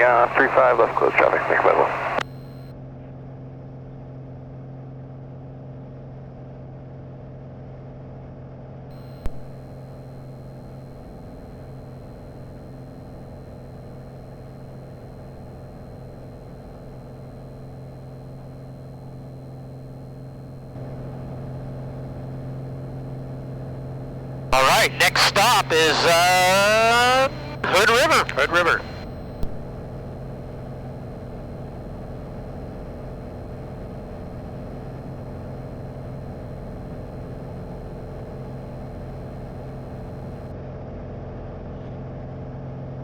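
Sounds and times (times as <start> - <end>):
click: 9.0 - 9.6, 29.4 - 29.6.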